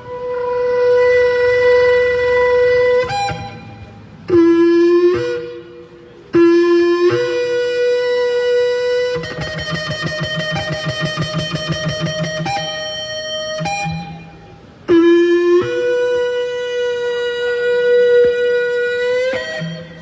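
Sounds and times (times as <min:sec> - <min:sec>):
shofar blasts: 0:00.0 - 0:05.7.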